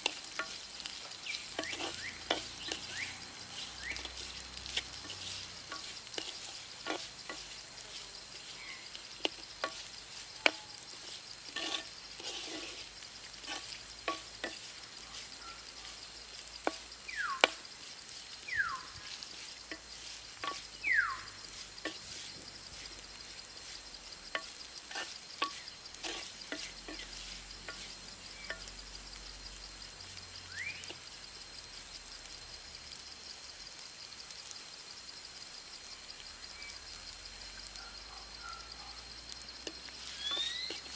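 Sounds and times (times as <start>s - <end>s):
spoon scraping a pan: 0.0s - 29.0s, 39.6s - 40.9s
frying sizzle: 0.0s - 40.9s.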